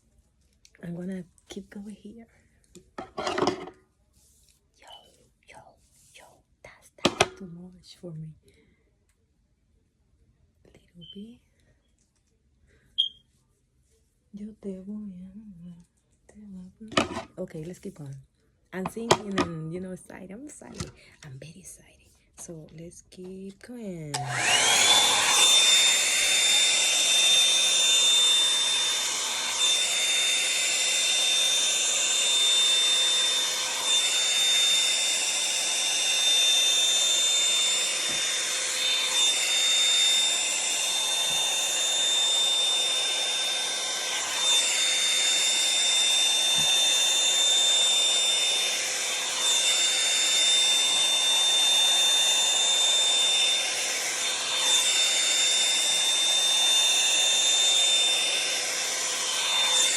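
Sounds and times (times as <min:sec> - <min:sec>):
hair dryer brush motor whine: 0:03.0 - 0:03.7, 0:19.0 - 0:19.5, 0:24.1 - 0:59.9.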